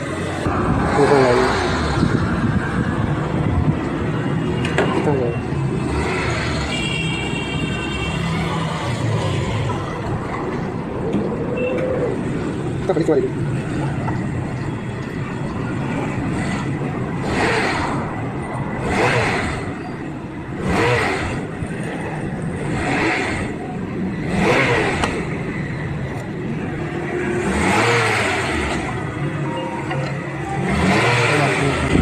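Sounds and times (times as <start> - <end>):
vehicle engine revving: 0.0 - 3.4, 5.6 - 6.7, 16.2 - 19.8, 20.5 - 21.6, 22.5 - 23.6, 24.2 - 25.7, 26.8 - 29.2, 30.1 - 32.0.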